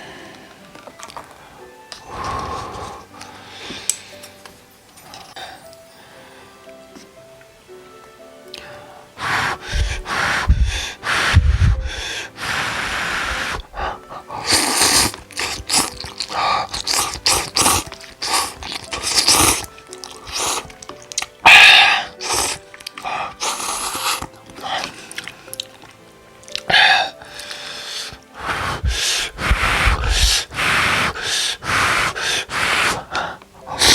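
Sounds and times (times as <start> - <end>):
soft background music: 0.0 - 33.9
noodles slurped and chewed: 9.2 - 33.9.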